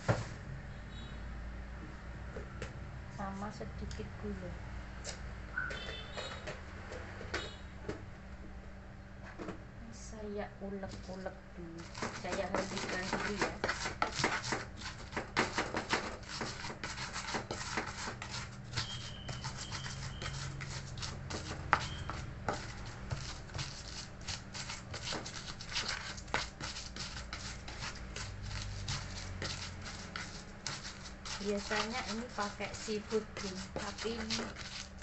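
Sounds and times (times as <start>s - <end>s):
pestle grinding in mortar: 11.8s - 35.0s.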